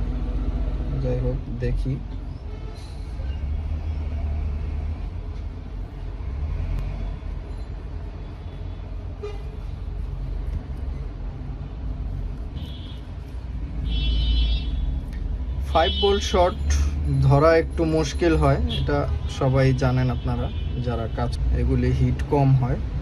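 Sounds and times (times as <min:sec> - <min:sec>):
road traffic rumble: 0:00.0 - 0:23.0
high horn-like tone: 0:08.5 - 0:09.6.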